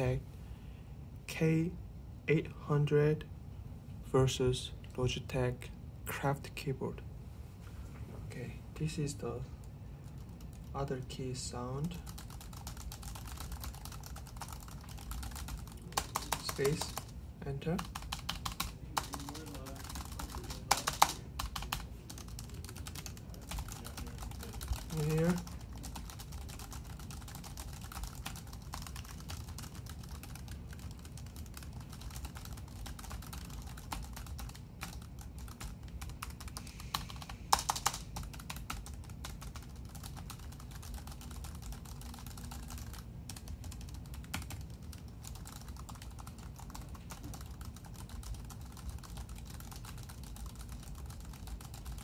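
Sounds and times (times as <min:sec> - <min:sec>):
keyboard typing clicks: 0:17.8 - 0:52.0.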